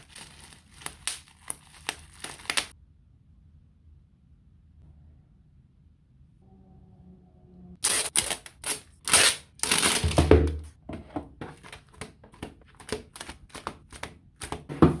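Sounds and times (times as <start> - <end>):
packaging rustling: 0.0 - 2.7, 7.8 - 10.2, 11.5 - 14.6.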